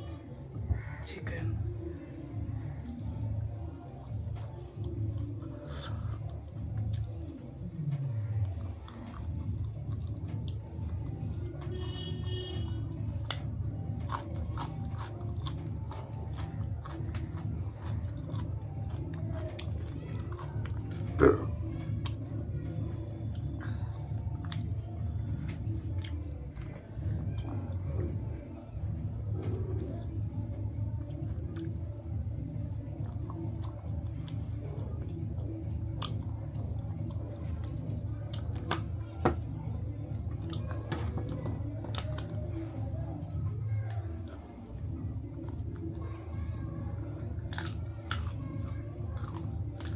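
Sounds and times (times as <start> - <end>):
person chewing food: 0.0 - 49.9
mouth and teeth clicks: 12.8 - 29.6.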